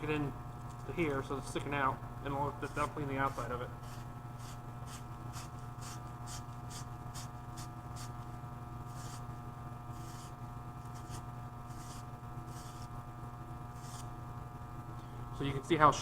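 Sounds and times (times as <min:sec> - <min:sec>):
steady electrical hum: 0:00.0 - 0:16.0
brush scrubbing copper pipe: 0:02.6 - 0:13.0, 0:13.7 - 0:14.2.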